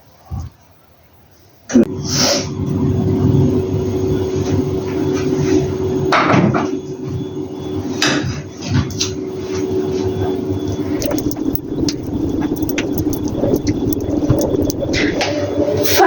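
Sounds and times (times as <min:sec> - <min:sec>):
beaters rattling against bowl: 0:10.8 - 0:15.3.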